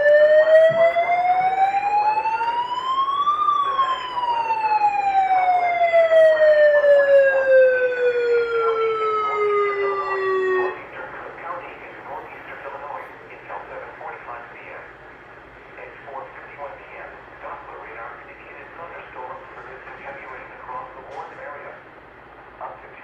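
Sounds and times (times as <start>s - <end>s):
siren wailing: 0.0s - 11.0s.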